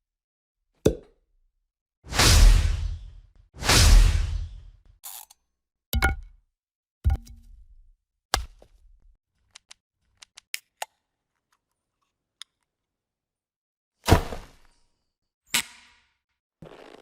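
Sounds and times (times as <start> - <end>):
sharp hits with low thud: 2.1 - 4.7.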